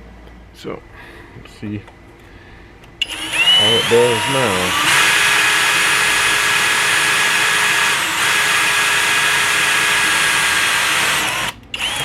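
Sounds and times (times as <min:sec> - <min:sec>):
electric drill running: 0:03.0 - 0:12.0.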